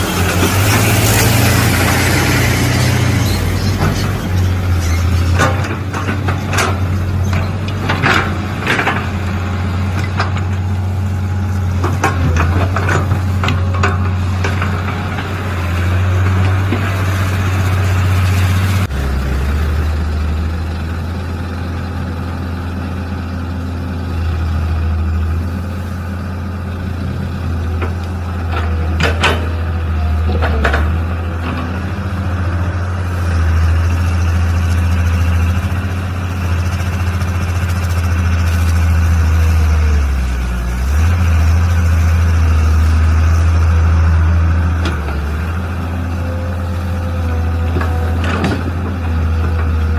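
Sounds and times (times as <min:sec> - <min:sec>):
excavator engine running: 0:00.0 - 0:49.9.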